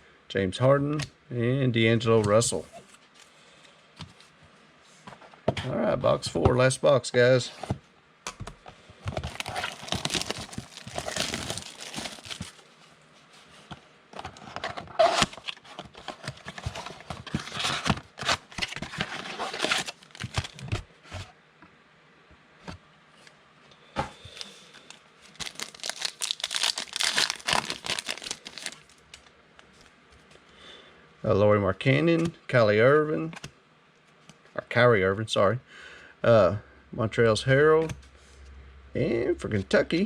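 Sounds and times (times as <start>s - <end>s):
plastic wrapping crinkling and tearing: 9.2s - 12.6s, 15.0s - 20.8s, 24.3s - 29.3s.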